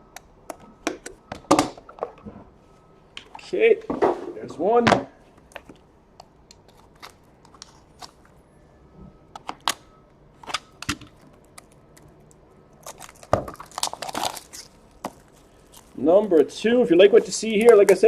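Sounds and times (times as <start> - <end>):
packaging being handled: 10.4 - 18.0.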